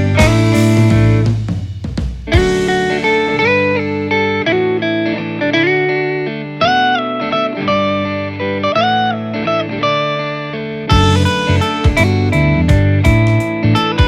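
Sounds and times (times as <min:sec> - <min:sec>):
band with drum hits: 0:00.0 - 0:04.4, 0:10.9 - 0:14.0
electric guitar melody: 0:00.0 - 0:14.0.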